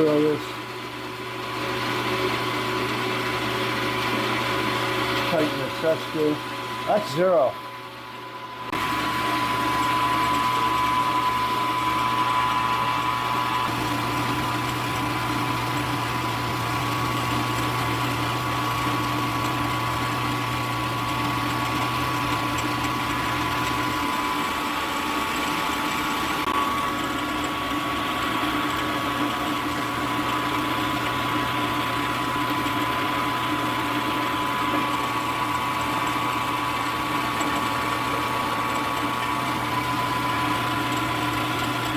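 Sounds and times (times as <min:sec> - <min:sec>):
end mill cutting metal: 0:00.0 - 0:41.9
milling machine spindle whine: 0:00.0 - 0:41.9.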